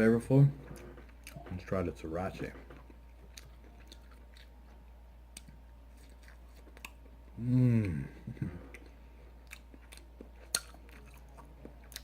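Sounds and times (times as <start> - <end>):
wet chewing clicks: 2.7 - 7.0, 8.7 - 12.0
man humming mmm: 7.3 - 8.8.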